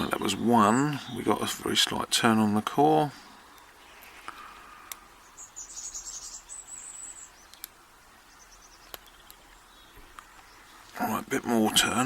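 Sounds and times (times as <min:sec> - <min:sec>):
high pulsing chirp: 0:05.1 - 0:10.8.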